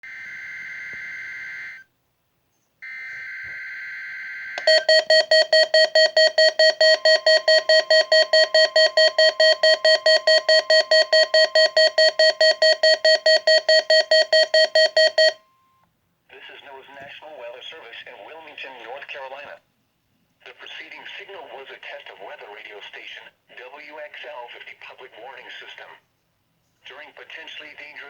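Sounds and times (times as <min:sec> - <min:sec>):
faint steady warning tone: 0:02.8 - 0:15.8
alarm beeping rapidly: 0:04.6 - 0:15.4.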